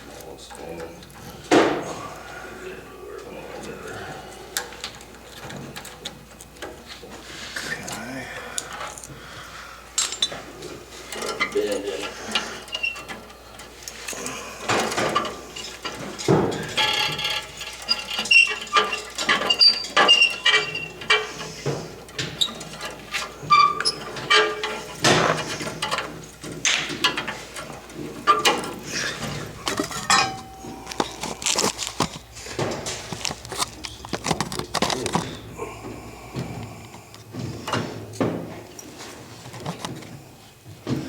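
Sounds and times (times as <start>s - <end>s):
metallic clinks and scrapes of tools: 10.0s - 35.5s.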